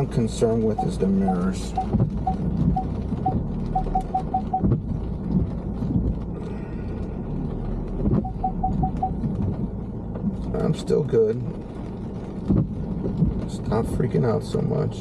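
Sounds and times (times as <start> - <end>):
car running noise: 0.0 - 15.0
car proximity warning beeping: 0.7 - 4.8, 8.1 - 9.2.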